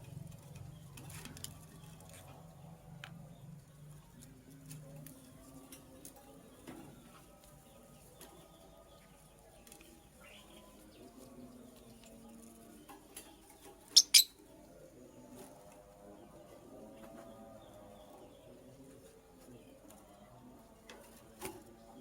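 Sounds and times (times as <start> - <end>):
faint background birds: 0.0 - 22.0
bird chirps: 13.9 - 14.4.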